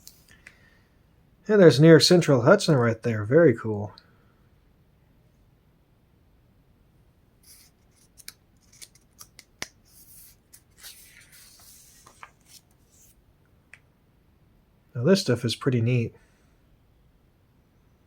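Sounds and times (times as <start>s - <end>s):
scraping and rustling: 7.4s - 13.2s.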